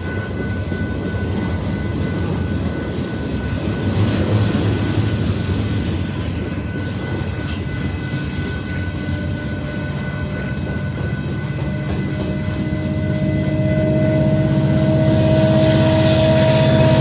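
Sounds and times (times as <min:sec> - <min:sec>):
diesel locomotive engine rumble: 0:00.0 - 0:17.0
thin high whine: 0:10.1 - 0:17.0.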